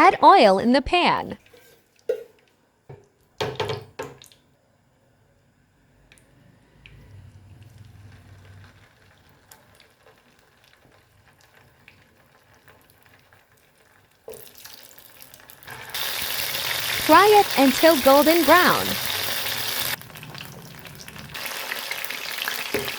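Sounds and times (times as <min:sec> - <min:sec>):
frying sizzle: 0:07.4 - 0:22.9
oil crackling in a pan: 0:07.6 - 0:22.9.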